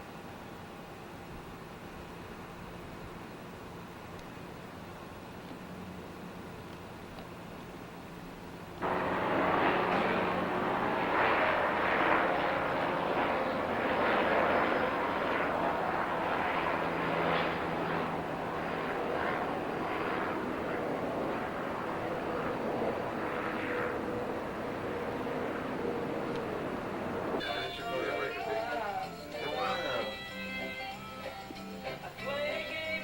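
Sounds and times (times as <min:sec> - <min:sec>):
vehicle rushing noise: 0:08.8 - 0:27.4.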